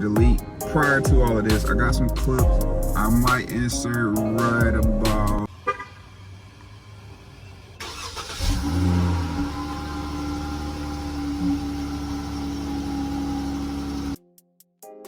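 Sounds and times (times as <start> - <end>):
car engine starting and idling: 0.0 - 14.2.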